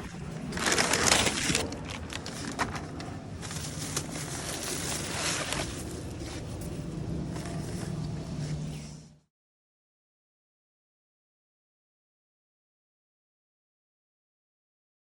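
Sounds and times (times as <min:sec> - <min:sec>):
low engine hum: 0:00.0 - 0:09.3.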